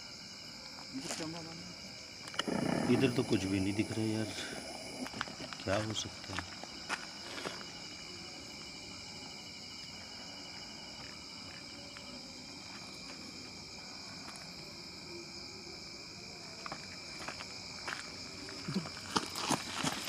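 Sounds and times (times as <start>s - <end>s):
crickets trilling: 0.0s - 20.0s.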